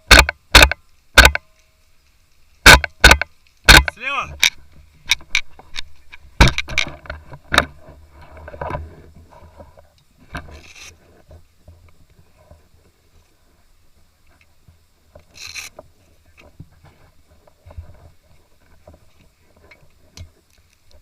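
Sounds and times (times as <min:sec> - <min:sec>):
airsoft gun shots: 0:00.1 - 0:01.4, 0:02.6 - 0:04.0
rustling and bumping of player moving: 0:02.0 - 0:13.3.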